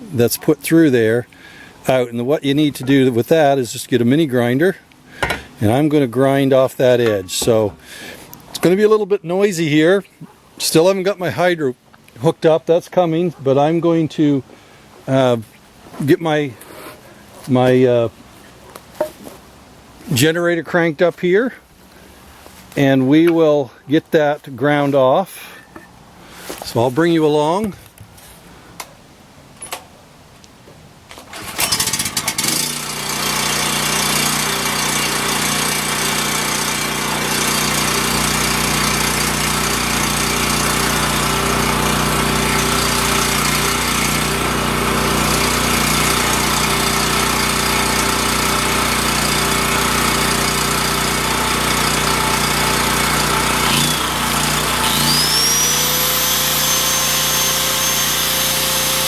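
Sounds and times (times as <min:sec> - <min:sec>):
grinder whining: 0:31.3 - 0:59.0
portable generator engine running: 0:31.3 - 0:59.0.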